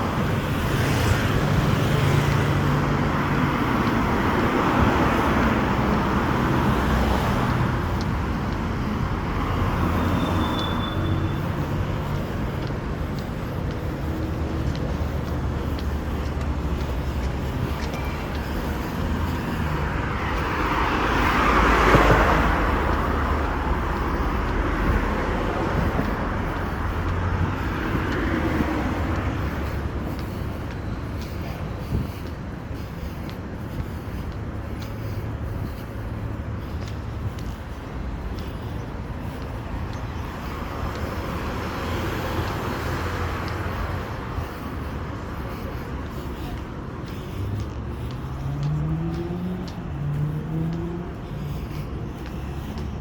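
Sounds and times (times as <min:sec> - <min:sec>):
road traffic: 0:00.0 - 0:53.0
vehicle passing: 0:00.0 - 0:53.0.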